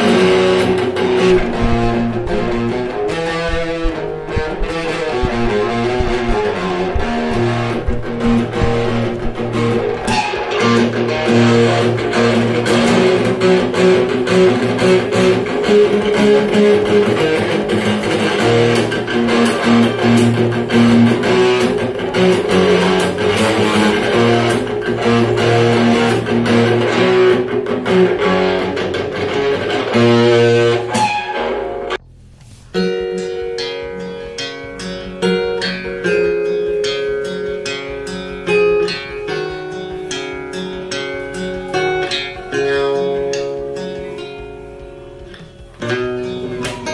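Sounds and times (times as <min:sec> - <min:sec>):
electric guitar strumming chords: 0:00.0 - 0:46.9.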